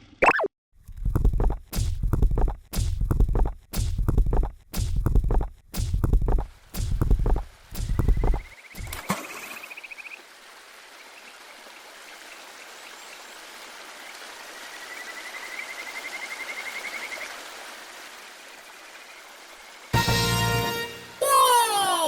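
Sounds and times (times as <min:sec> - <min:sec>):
heavy low thumps: 0:00.9 - 0:08.4.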